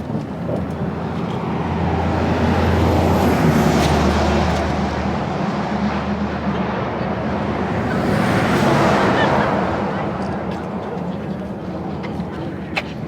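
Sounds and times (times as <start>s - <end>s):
bus engine hum and road noise: 0.0s - 13.0s.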